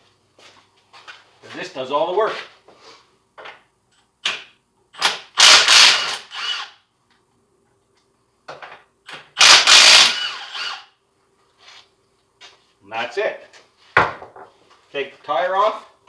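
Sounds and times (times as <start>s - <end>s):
impact wrench rapid hammering: 5.0s - 6.3s, 9.4s - 10.5s.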